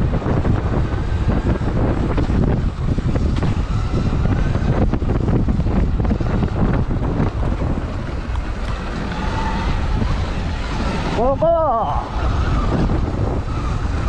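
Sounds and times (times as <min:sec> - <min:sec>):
wind buffeting microphone: 0:00.0 - 0:14.0
bike knocks and rattles: 0:00.2 - 0:11.3.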